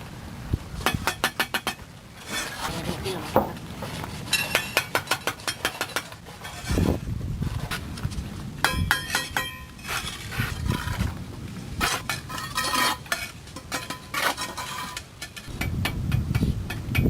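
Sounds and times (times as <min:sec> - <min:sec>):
metal hand tools clanking: 0:00.9 - 0:06.8, 0:08.6 - 0:11.0, 0:11.8 - 0:17.0.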